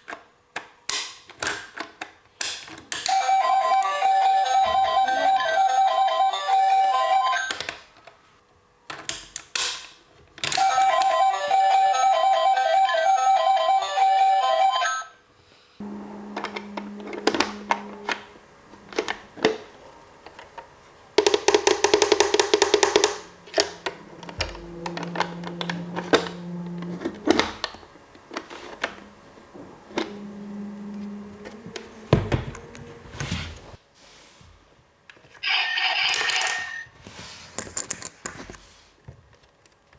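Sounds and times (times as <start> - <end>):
toy electronic jingle: 3.1 - 7.6, 10.6 - 15.1, 35.4 - 36.9
small motor humming: 15.8 - 20.9, 21.9 - 33.8
rattling clicks: 16.4 - 32.9.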